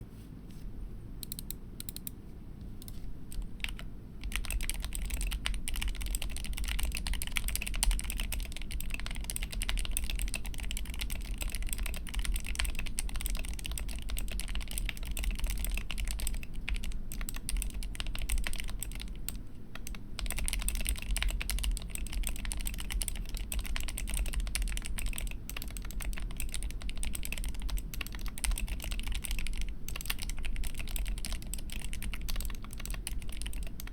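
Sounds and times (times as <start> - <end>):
typing on mechanical keyboard: 2.8 - 33.9.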